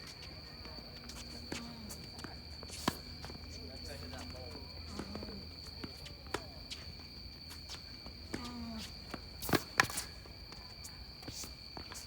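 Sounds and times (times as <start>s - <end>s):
footsteps and shoe scuffs: 0.0s - 12.0s.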